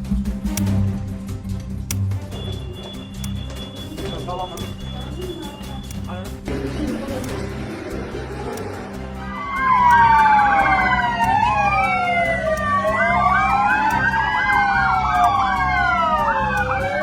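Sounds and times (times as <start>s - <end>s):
emergency sirens wailing and yelping: 3.6s - 17.0s.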